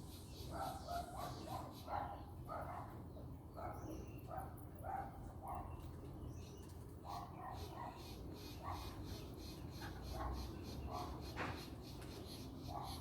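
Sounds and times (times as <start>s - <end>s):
distant dog barking: 0.5s - 5.8s, 7.0s - 9.0s, 10.0s - 11.3s, 12.6s - 13.0s.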